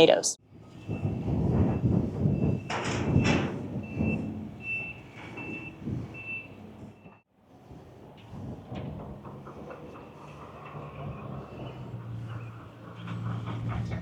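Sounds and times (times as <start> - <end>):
loud clatter: 0.4 - 14.0
low engine rumble: 0.4 - 14.0
vehicle reversing alarm beeps: 0.6 - 7.2.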